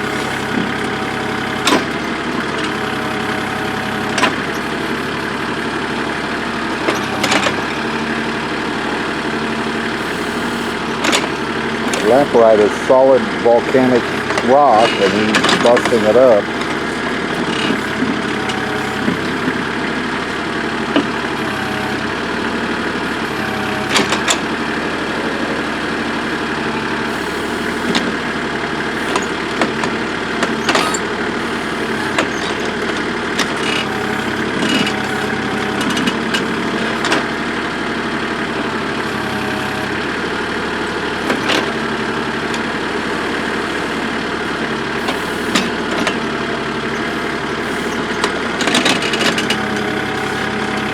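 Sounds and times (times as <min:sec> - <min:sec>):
backhoe engine running: 0:00.0 - 0:50.9.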